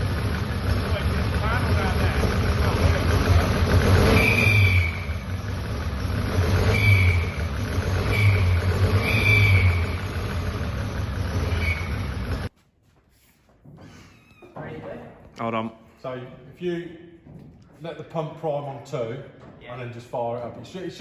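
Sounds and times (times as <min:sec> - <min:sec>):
car engine revving: 0:00.0 - 0:12.5
high whistle: 0:04.0 - 0:05.3, 0:06.6 - 0:10.1, 0:11.5 - 0:12.0.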